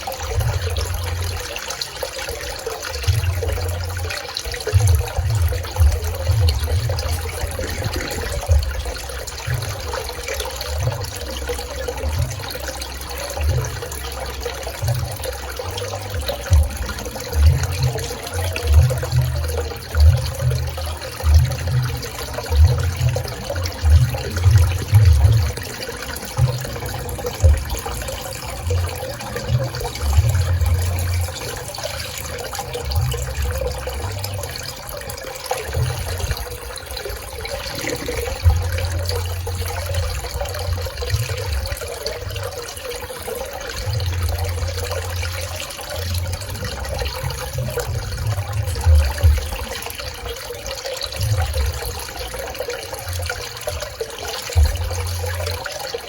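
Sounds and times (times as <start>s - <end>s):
pool water splashing: 0.0s - 56.0s
low rumble: 4.8s - 12.6s, 16.0s - 34.6s, 35.7s - 42.6s.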